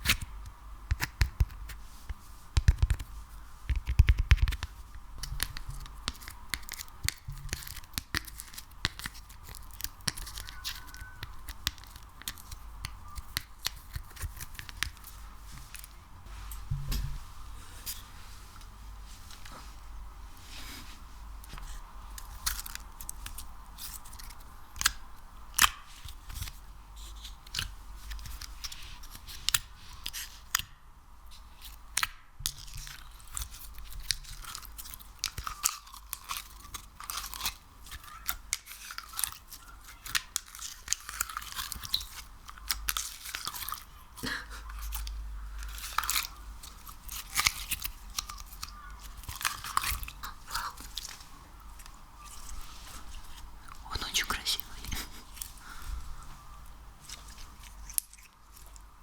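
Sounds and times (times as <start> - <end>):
sticky slime crackles and pops: 0.9 - 1.8, 2.6 - 15.1, 31.6 - 44.2, 44.8 - 55.5.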